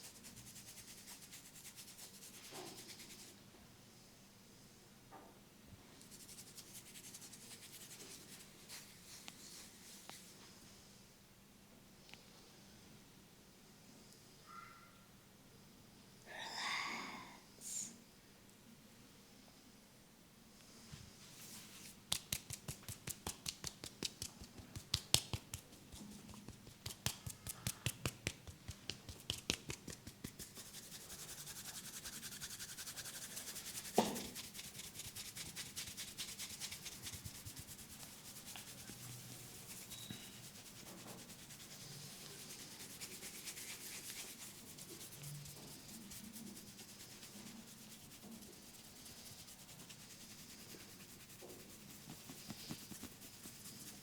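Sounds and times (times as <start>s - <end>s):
fingers rubbing through hair: 0.0s - 3.4s, 6.0s - 10.3s, 21.5s - 54.0s
finger taps on scalp: 22.1s - 25.7s.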